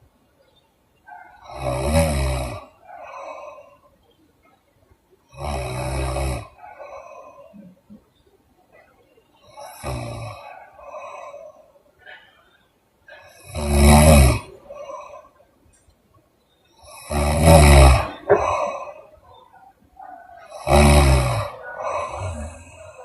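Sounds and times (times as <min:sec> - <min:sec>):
woman snoring loudly: 0:01.5 - 0:02.7, 0:05.3 - 0:06.6, 0:09.5 - 0:11.4, 0:13.3 - 0:15.3, 0:16.8 - 0:19.1, 0:20.4 - 0:23.0
soft breathing: 0:02.7 - 0:04.5, 0:06.6 - 0:09.8, 0:10.4 - 0:13.4, 0:14.4 - 0:16.2, 0:18.1 - 0:20.5, 0:21.5 - 0:23.0.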